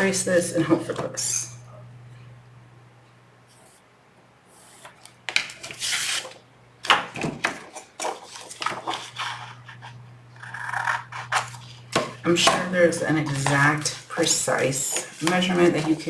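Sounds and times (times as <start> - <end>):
steady low hum: 0.0 - 5.3, 6.4 - 16.0
paper rustling and scraping: 4.5 - 6.4, 7.4 - 16.0.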